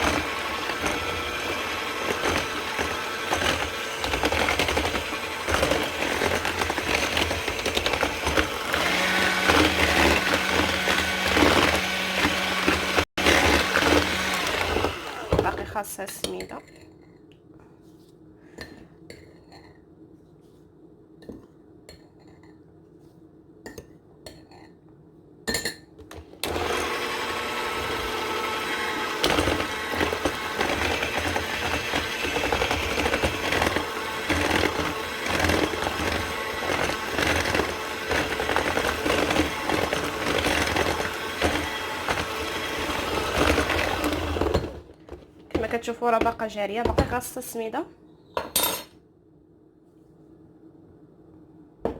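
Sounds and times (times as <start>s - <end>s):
electric mixer running: 0.0s - 15.8s, 26.4s - 44.8s
utensils clinking on a bowl: 48.4s - 49.0s.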